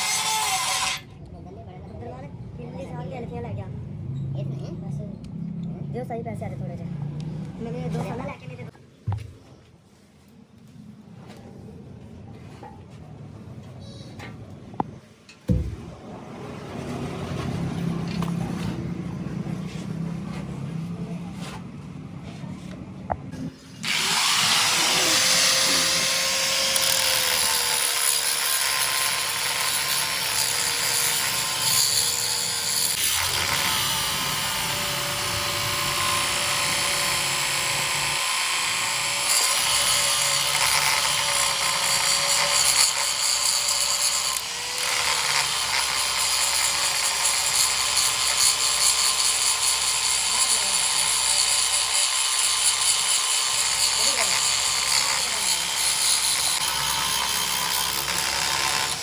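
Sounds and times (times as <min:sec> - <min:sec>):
electric power tool whining: 0:23.8 - 0:59.0.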